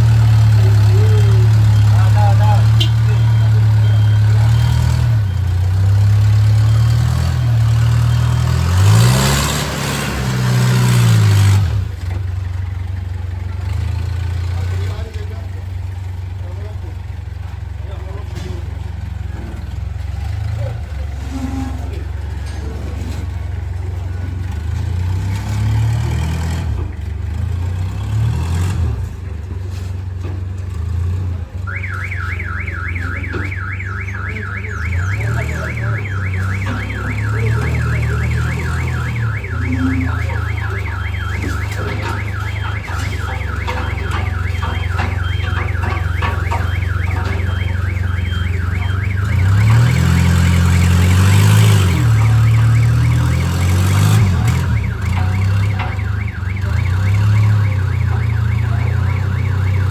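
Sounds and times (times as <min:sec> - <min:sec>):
vehicle engine droning: 0:00.0 - 0:59.9
warbling electronic alarm: 0:31.7 - 0:59.9.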